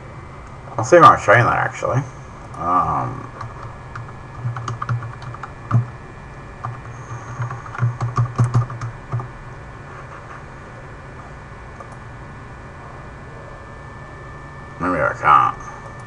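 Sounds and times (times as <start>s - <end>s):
keyboard typing: 3.2s - 5.9s, 6.6s - 9.3s.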